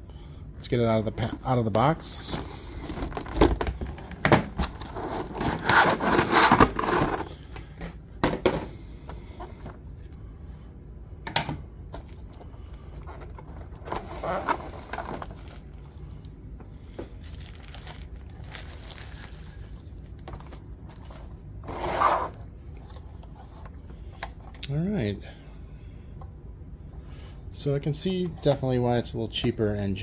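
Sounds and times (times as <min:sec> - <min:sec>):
packaging scraping and rustling: 0:02.1 - 0:07.4, 0:13.0 - 0:15.7, 0:17.2 - 0:23.6.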